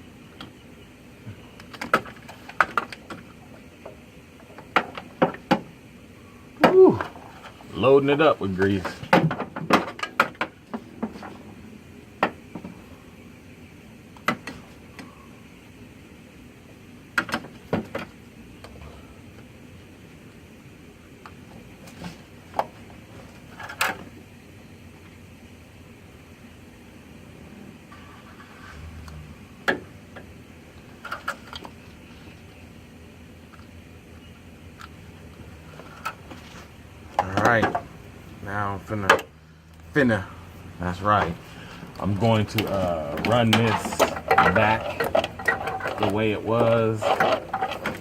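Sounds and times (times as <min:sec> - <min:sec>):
small hard parts clicking: 0:41.8 - 0:48.0.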